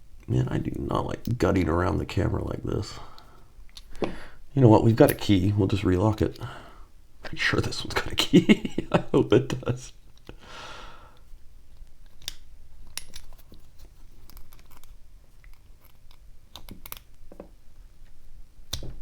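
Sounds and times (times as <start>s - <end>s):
soft rustle: 12.7s - 16.2s.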